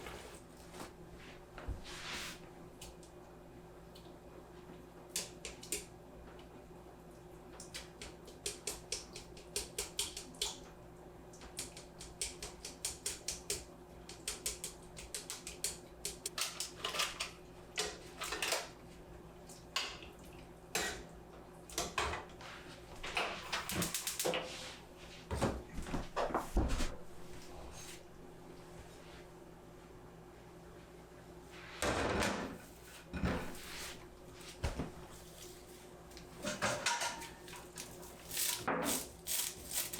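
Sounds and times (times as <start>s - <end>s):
utensils tapping against bowl: 5.1s - 5.9s, 7.6s - 10.6s, 11.4s - 18.7s.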